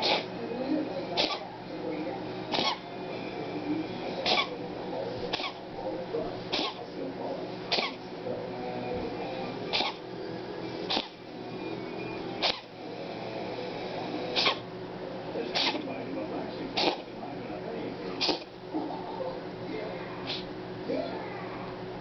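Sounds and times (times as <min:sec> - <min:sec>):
pet sneezing: 0:00.0 - 0:00.4, 0:01.2 - 0:01.5, 0:02.5 - 0:02.9, 0:04.2 - 0:04.6, 0:05.3 - 0:05.6, 0:06.5 - 0:06.9, 0:07.6 - 0:08.0, 0:09.7 - 0:10.0, 0:10.9 - 0:11.2, 0:12.4 - 0:12.7, 0:14.3 - 0:14.7, 0:15.4 - 0:15.9, 0:16.7 - 0:17.1, 0:18.2 - 0:18.5, 0:20.2 - 0:20.5.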